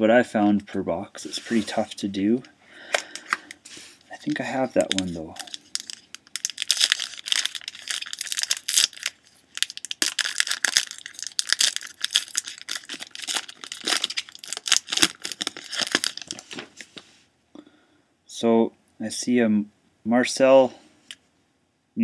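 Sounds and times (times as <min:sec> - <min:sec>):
plastic wrapper tearing and crinkling: 0:04.7 - 0:16.9.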